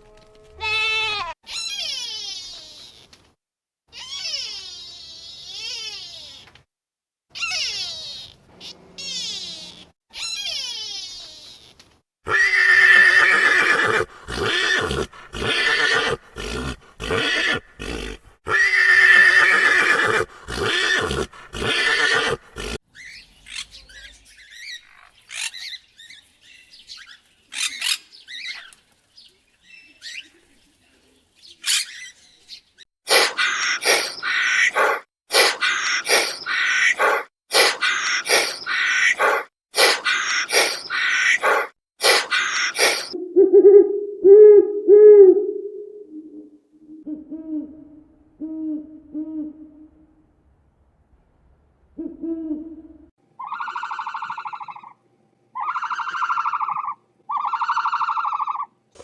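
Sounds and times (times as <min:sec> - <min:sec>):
horse whinnying: 0:00.1 - 0:01.9, 0:12.3 - 0:22.8, 0:33.1 - 0:43.2
short repeated animal calls: 0:33.1 - 0:43.2.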